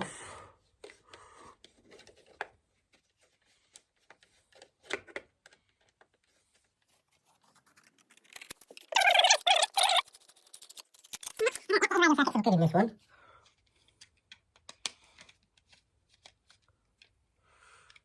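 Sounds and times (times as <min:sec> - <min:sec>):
handling clicks and scrapes: 0:01.6 - 0:11.8.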